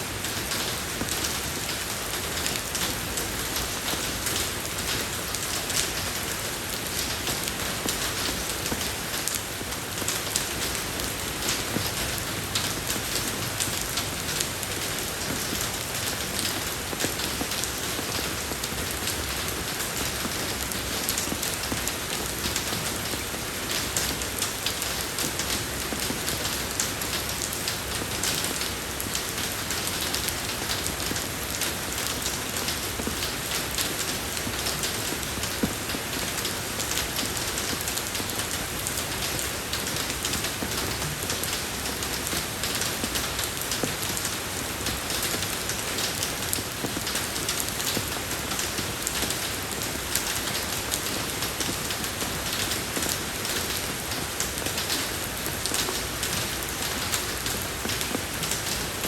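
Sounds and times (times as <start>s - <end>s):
rain falling on road: 0.0s - 59.0s.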